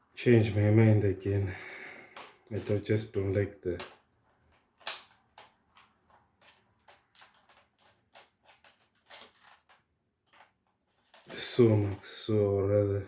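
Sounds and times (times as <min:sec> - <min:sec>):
knife scoring plastic: 0:03.7 - 0:11.9.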